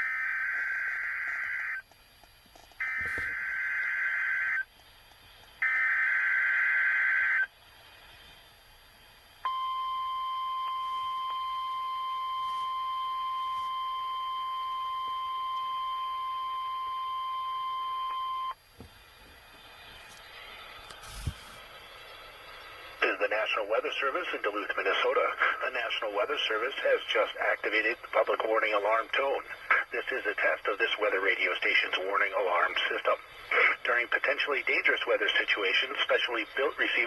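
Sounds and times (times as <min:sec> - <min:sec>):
steady alarm tone: 0:02.8 - 0:04.6, 0:05.6 - 0:07.5, 0:09.4 - 0:18.6.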